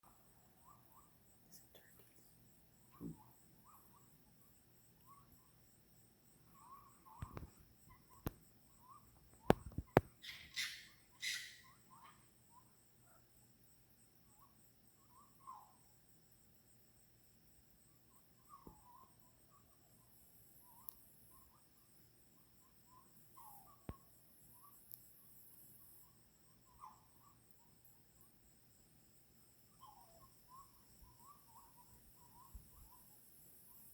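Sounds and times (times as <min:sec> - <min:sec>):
night animal calling: 0:00.0 - 0:01.2, 0:02.8 - 0:13.3, 0:14.2 - 0:16.1, 0:18.0 - 0:24.8, 0:25.8 - 0:28.4, 0:29.4 - 0:33.9
insect drone: 0:00.0 - 0:33.9
sharp clicks: 0:09.4 - 0:10.1.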